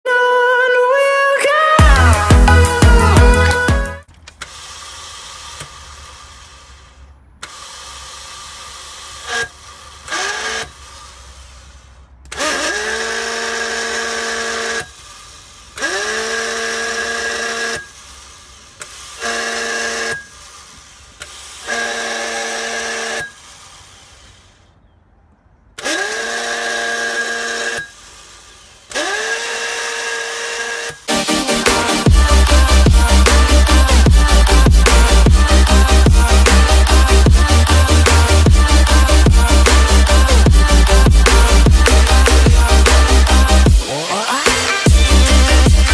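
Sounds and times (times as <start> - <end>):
engine whine rising in pitch: 25.8 - 45.9.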